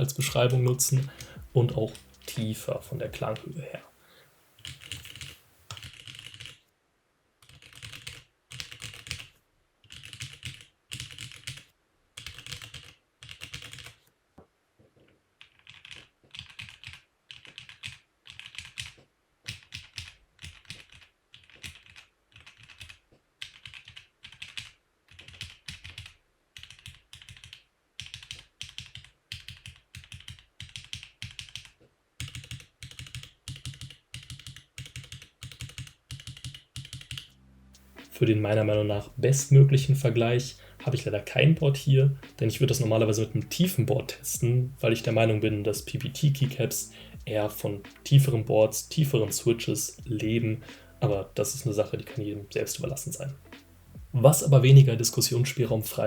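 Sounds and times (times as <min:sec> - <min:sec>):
typing on mechanical keyboard: 0:04.6 - 0:06.6, 0:07.4 - 0:14.0, 0:15.4 - 0:37.3.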